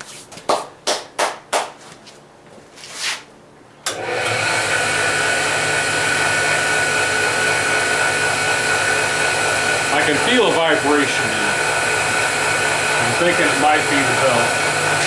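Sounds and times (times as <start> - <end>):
surface grinder whirring: 3.9 - 15.0.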